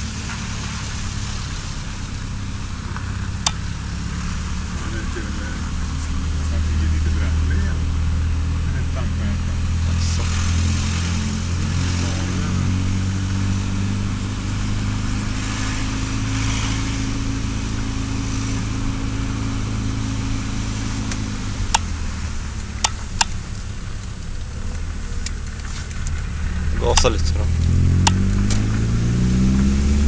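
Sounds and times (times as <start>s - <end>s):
car engine running: 0.0s - 30.0s
sharp clicks: 22.6s - 26.3s, 26.9s - 28.8s.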